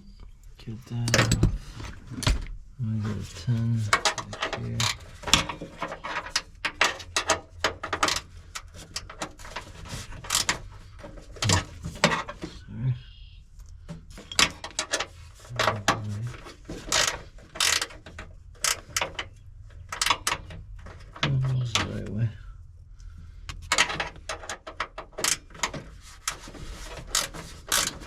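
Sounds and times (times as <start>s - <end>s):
hand ratchet clicking: 16.9s - 17.9s, 27.1s - 28.0s.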